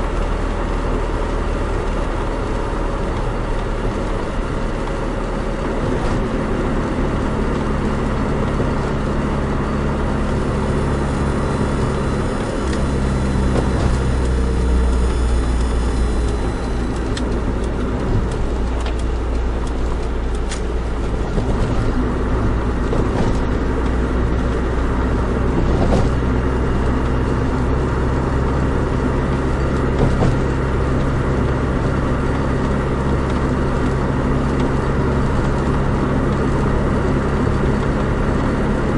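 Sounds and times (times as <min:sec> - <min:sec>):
car engine drone: 0:00.0 - 0:38.9
road rumble: 0:00.0 - 0:38.9.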